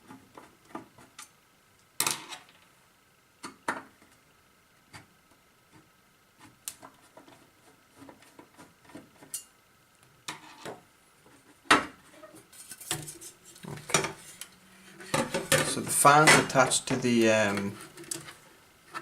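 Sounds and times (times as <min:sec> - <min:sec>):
parts clattering: 0:12.4 - 0:19.0.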